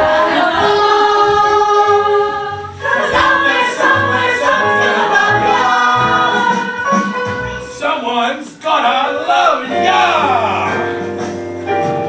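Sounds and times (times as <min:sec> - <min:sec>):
voices singing with accompaniment: 0:00.0 - 0:11.8
bass line: 0:09.7 - 0:12.0.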